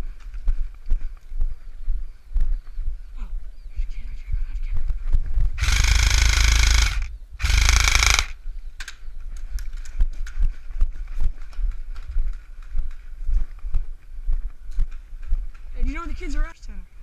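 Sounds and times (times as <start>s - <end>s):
light footsteps: 0.0s - 3.1s, 9.2s - 16.2s
airsoft gun firing bursts: 5.6s - 8.4s.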